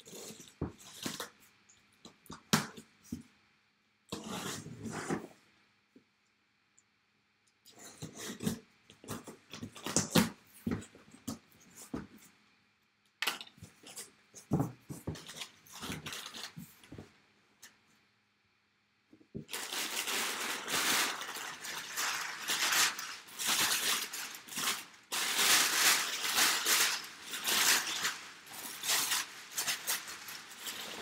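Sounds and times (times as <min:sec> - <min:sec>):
packaging crinkling and tearing: 0:15.1 - 0:16.7, 0:19.4 - 0:31.0.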